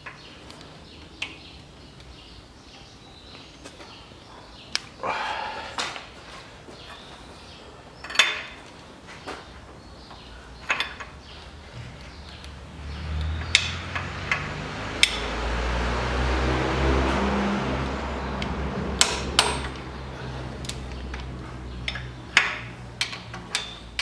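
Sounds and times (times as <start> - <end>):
metal tools knocking and clinking: 8.0 - 8.7, 10.6 - 11.2, 19.0 - 19.9, 21.8 - 24.0.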